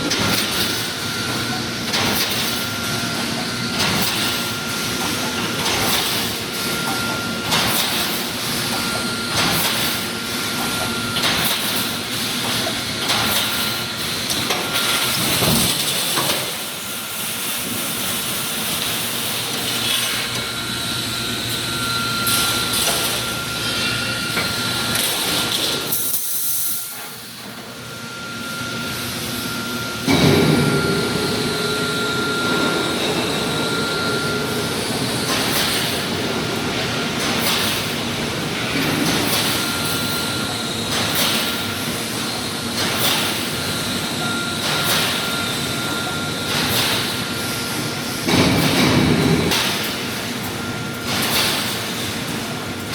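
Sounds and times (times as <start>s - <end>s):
steady mechanical din: 30.0s - 39.8s.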